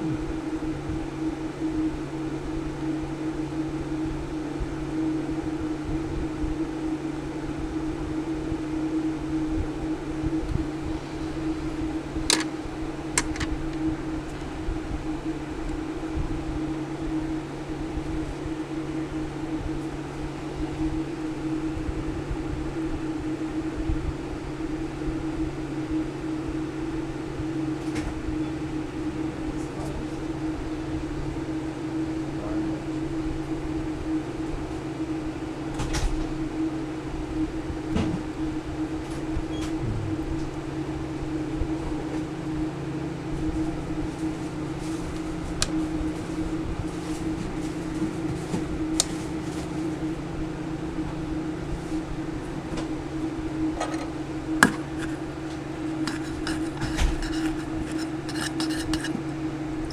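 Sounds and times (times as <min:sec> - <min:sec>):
low motor hum: 0:38.5 - 0:59.9.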